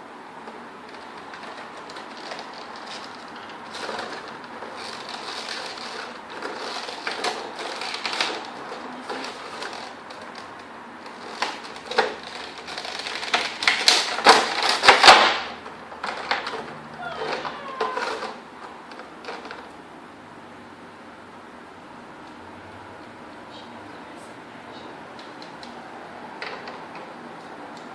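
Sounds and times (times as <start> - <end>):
packaging rustling and crinkling: 0.9 - 16.6, 17.3 - 19.6.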